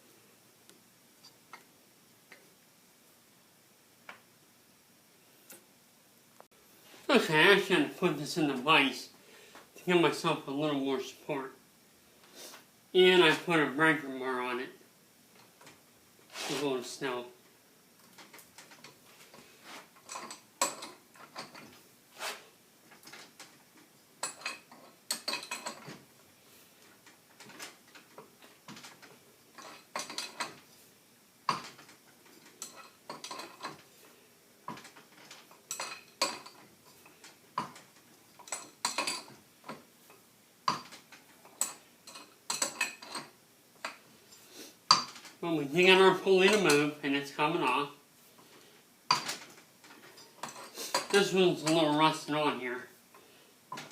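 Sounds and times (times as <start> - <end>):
steel tools clicking and clanking: 20.0 - 21.8, 24.2 - 26.0, 27.0 - 30.6, 31.5 - 33.8, 34.7 - 39.8, 40.7 - 45.4, 46.4 - 46.9, 49.1 - 52.1.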